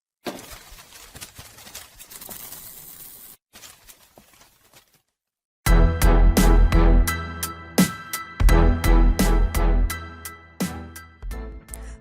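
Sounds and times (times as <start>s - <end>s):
background music with steady beat: 5.7s - 12.0s.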